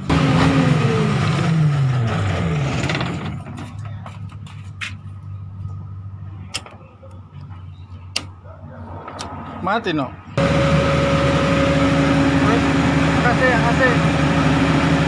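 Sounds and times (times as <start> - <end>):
generator engine running: 0.0 - 6.3, 10.4 - 15.0.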